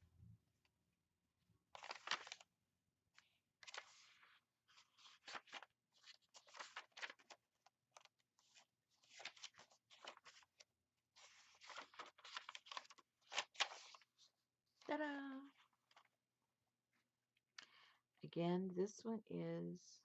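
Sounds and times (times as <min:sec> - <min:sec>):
paper pages rustling: 0:01.7 - 0:02.5, 0:03.6 - 0:10.6, 0:11.2 - 0:14.3, 0:15.6 - 0:16.1.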